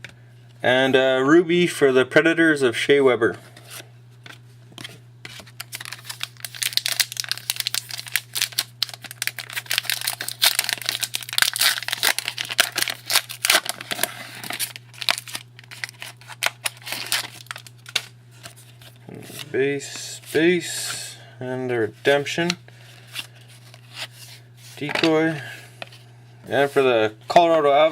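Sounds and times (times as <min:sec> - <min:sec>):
card packaging crinkling: 0:04.2 - 0:19.5.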